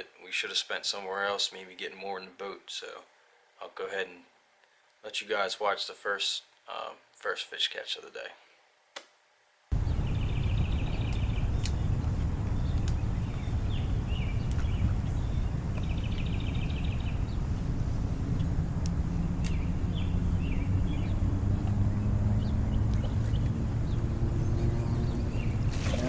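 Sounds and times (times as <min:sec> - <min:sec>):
faint hum: 0:09.7 - 0:21.5
small birds chirping: 0:09.7 - 0:26.0
steady low rumble: 0:09.7 - 0:26.0.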